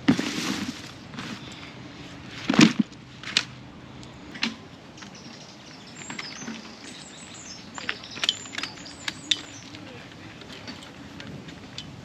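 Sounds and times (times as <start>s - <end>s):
steady outdoor hiss: 0.0s - 12.0s
small birds chirping: 5.0s - 11.0s.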